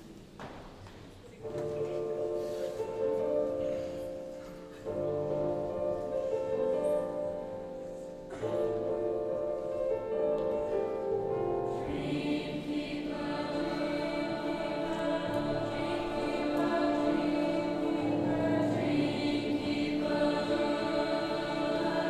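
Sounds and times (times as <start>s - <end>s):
choir singing held chords: 10.9s - 22.0s.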